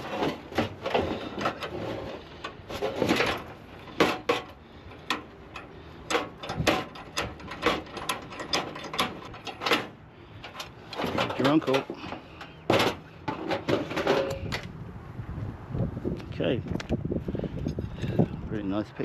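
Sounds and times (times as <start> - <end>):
junk knocking and clattering: 0.0 - 14.7.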